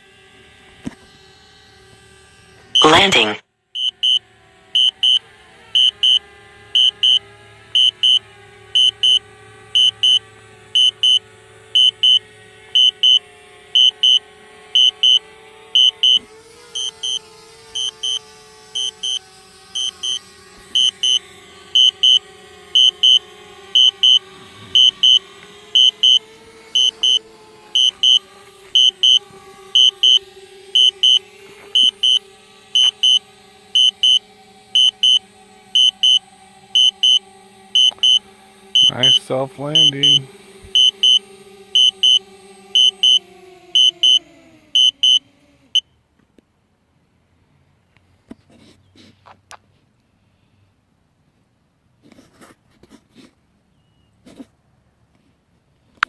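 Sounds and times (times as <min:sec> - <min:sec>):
drone propellers humming: 0:00.0 - 0:45.8
high electronic warning beeps: 0:02.8 - 0:04.2, 0:04.8 - 0:05.2, 0:05.8 - 0:06.2, 0:06.8 - 0:07.2, 0:07.8 - 0:08.2, 0:08.8 - 0:09.2, 0:09.8 - 0:10.2, 0:10.8 - 0:11.2, 0:11.8 - 0:12.2, 0:12.8 - 0:13.2, 0:13.8 - 0:14.2, 0:14.8 - 0:15.2, 0:15.8 - 0:16.2, 0:16.8 - 0:17.2, 0:17.8 - 0:18.2, 0:18.8 - 0:19.2, 0:19.8 - 0:20.2, 0:20.8 - 0:21.2, 0:21.8 - 0:22.2, 0:22.8 - 0:23.2, 0:23.8 - 0:24.2, 0:24.8 - 0:25.2, 0:25.8 - 0:26.2, 0:26.8 - 0:27.2, 0:27.8 - 0:28.2, 0:28.8 - 0:29.2, 0:29.8 - 0:43.2, 0:43.8 - 0:44.2, 0:44.8 - 0:45.2.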